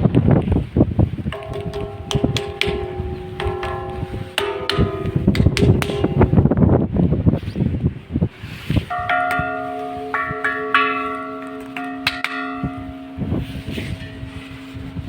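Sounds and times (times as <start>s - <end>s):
church bells ringing: 1.4s - 6.8s, 8.9s - 15.0s.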